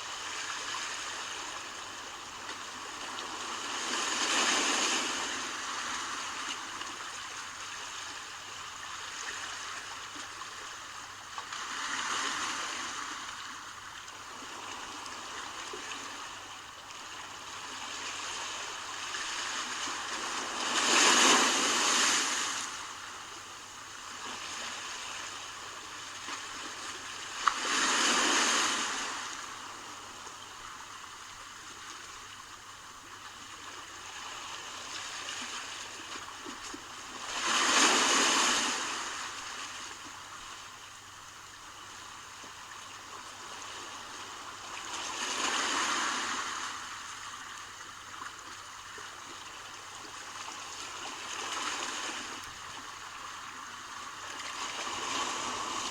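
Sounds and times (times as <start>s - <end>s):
waves breaking on shore: 2.6s - 7.3s, 17.6s - 23.4s, 24.0s - 30.9s, 34.1s - 40.2s, 43.3s - 47.6s, 50.2s - 55.9s.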